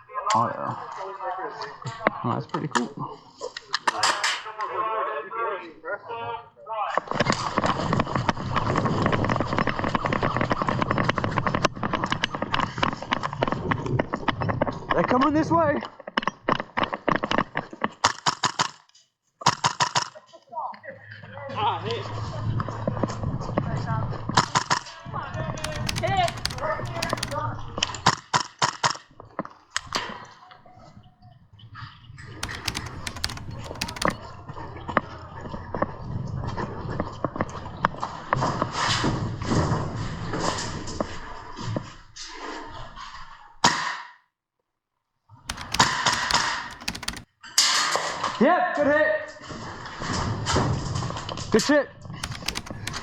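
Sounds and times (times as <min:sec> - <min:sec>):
equipment rattling: 0:25.6 - 0:27.5, 0:32.4 - 0:34.2, 0:45.5 - 0:47.2, 0:52.2 - 0:53.0
airsoft guns clicking: 0:25.6 - 0:27.6, 0:32.4 - 0:34.2, 0:45.5 - 0:47.3, 0:52.2 - 0:53.0.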